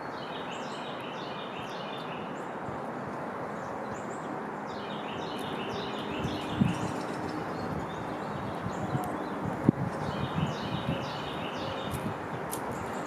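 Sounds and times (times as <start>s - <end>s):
small birds chirping: 3.6s - 13.0s.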